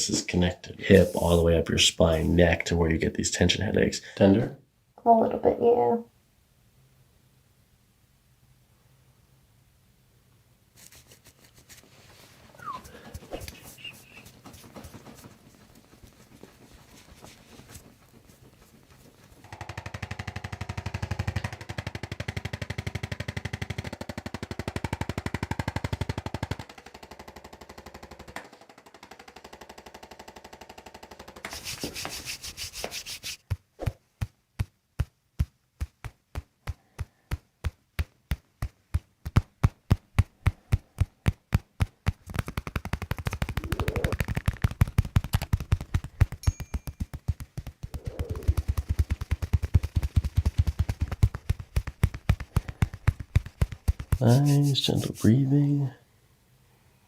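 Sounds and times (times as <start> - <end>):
rapid mechanical tapping: 19.4 - 31.8, 35.4 - 55.2.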